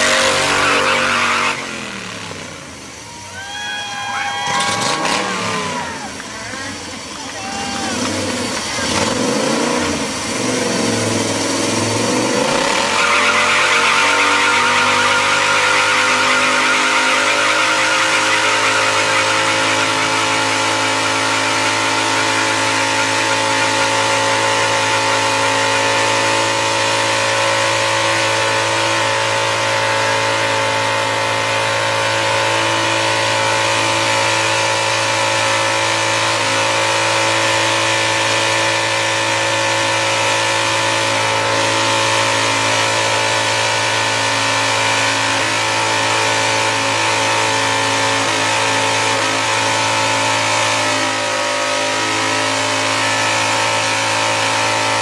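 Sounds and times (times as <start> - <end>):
lawnmower engine revving: 0.0 - 3.0, 4.5 - 7.2, 7.9 - 55.0
tyre squealing: 12.3 - 26.7.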